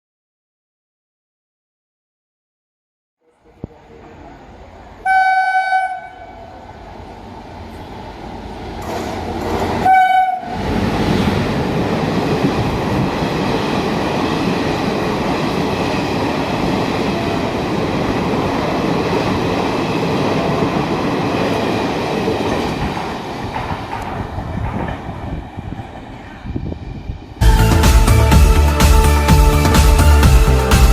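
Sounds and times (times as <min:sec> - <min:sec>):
locomotive horn blasts: 0:05.0 - 0:06.6, 0:09.8 - 0:10.6
train wheels rumbling and rattling: 0:07.0 - 0:30.2.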